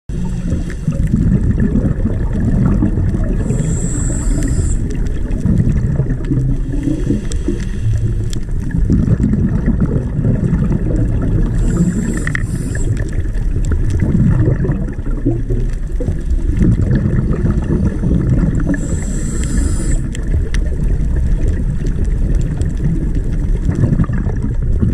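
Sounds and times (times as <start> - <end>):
underwater regulator breathing: 0.1 - 1.6, 3.2 - 5.4, 6.3 - 8.7, 11.4 - 13.4, 16.0 - 20.4
bubbling of exhaled air: 0.1 - 24.9
brief high hisses: 18.8 - 20.0.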